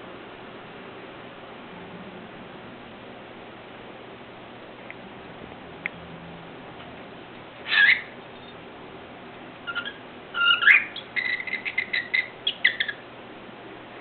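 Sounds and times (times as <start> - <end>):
cockatiel chirping and whistling: 7.7 - 8.6, 9.6 - 13.0.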